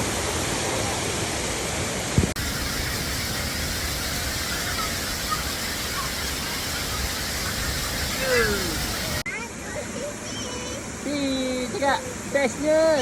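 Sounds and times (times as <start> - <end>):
waterfall rushing: 0.0 - 9.3.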